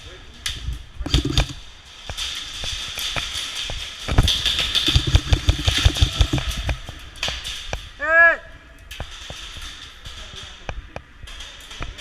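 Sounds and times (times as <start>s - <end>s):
airsoft guns firing bursts: 1.1s - 1.6s, 4.1s - 7.0s.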